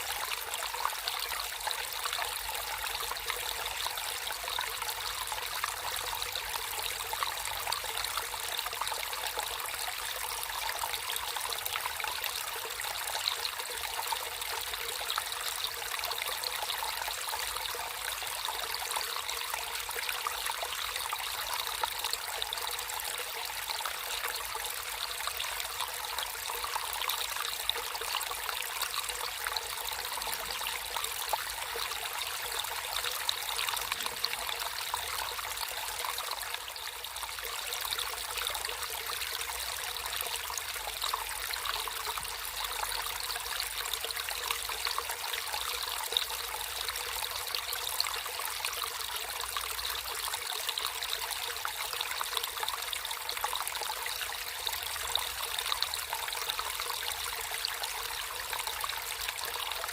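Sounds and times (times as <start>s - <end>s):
stream water trickling: 0.0s - 59.9s.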